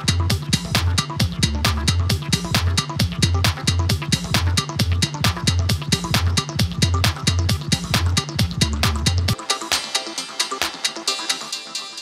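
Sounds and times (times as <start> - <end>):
heavy bass: 0.0 - 9.4
electronic music with steady beat: 0.0 - 12.0.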